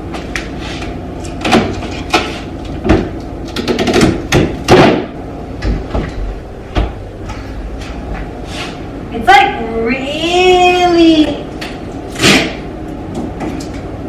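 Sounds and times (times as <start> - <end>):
refrigerator doors handled: 1.4 - 7.0.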